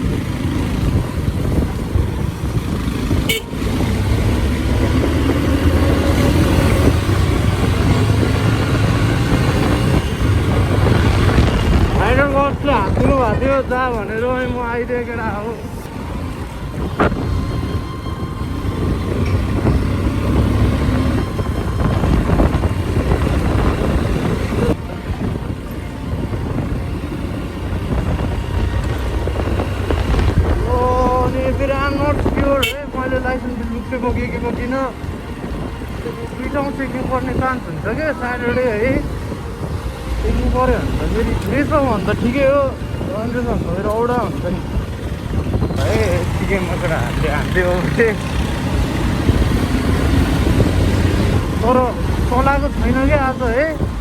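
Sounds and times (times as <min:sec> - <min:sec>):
motorcycle engine running: 0:00.0 - 0:13.6, 0:34.9 - 0:54.0
road and wind noise: 0:00.0 - 0:54.0.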